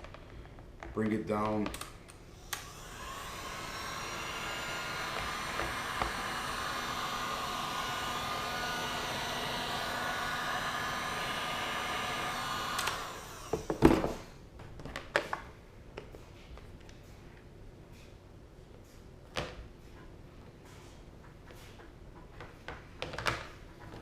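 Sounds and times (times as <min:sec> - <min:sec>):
hot-air blower running: 0:02.3 - 0:14.3.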